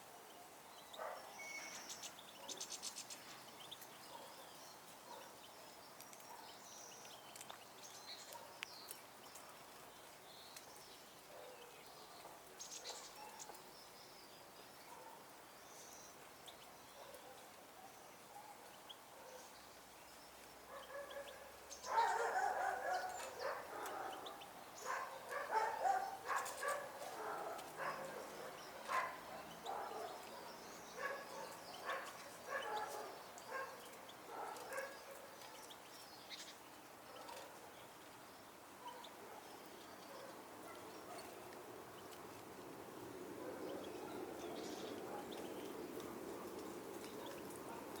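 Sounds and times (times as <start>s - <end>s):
dog barking: 1.0s - 1.3s, 14.9s - 15.2s, 18.3s - 19.5s, 20.7s - 35.4s, 38.8s - 39.5s, 45.1s - 45.4s, 47.2s - 48.0s.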